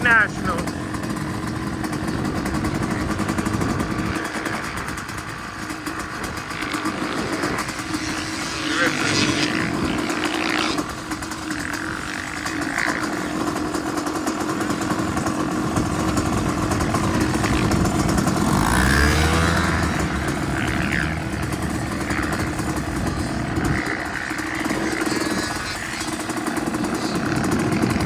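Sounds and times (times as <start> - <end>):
engine revs: 0.0 - 28.0
pit bike engines running: 0.0 - 28.0.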